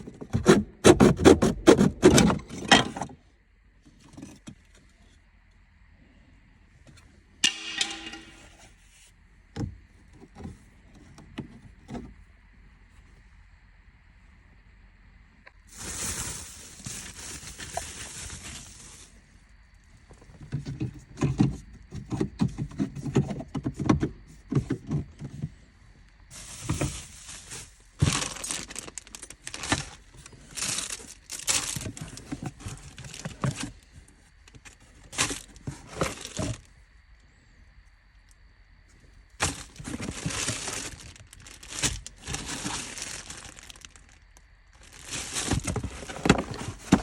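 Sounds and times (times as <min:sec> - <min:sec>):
rustling and crinkling plastic: 0:15.6 - 0:19.3, 0:26.3 - 0:36.7, 0:39.4 - 0:47.0
hissing rustle: 0:26.3 - 0:32.3.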